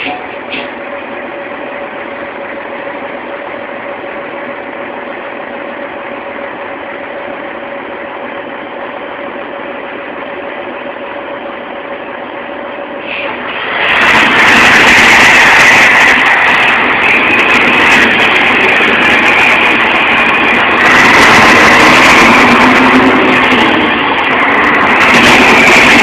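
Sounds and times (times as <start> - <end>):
diesel truck engine running: 0.0 - 26.0.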